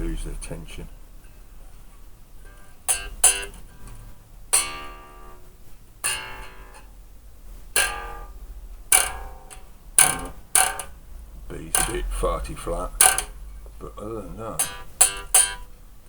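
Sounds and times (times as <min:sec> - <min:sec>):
bass guitar strings plucked: 0:07.7 - 0:15.7.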